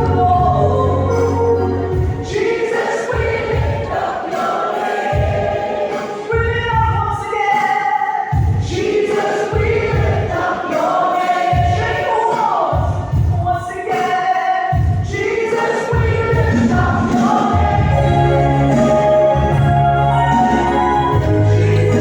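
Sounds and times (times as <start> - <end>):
low beat: 0.0 - 2.4
choir singing gospel song: 0.0 - 22.0.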